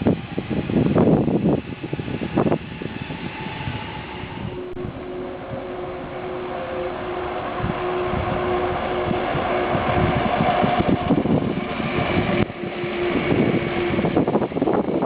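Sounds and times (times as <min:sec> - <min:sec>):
train passing close by: 0:00.0 - 0:15.0.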